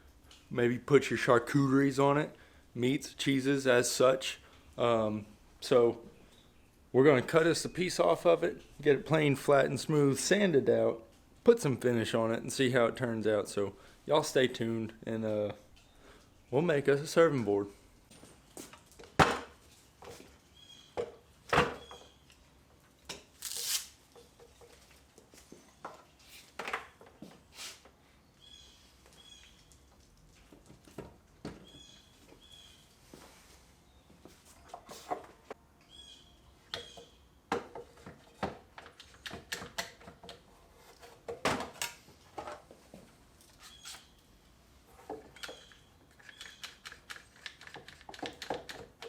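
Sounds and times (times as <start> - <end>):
knocks taps and clatter: 45.1 - 49.0.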